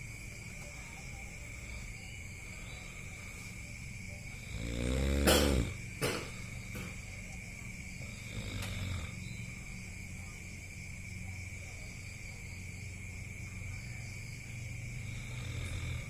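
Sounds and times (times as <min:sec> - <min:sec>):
person snoring: 0:04.3 - 0:05.8, 0:08.0 - 0:09.2, 0:15.0 - 0:16.0.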